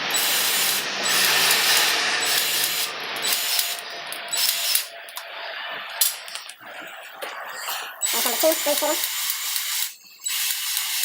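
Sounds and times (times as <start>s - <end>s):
powered grease gun pumping: 0.0s - 4.9s, 8.0s - 11.0s.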